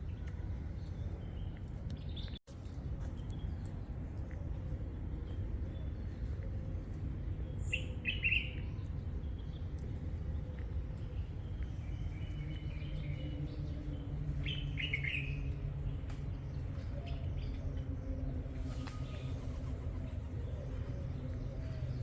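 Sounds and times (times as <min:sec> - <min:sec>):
bird chirping: 0:07.5 - 0:08.9.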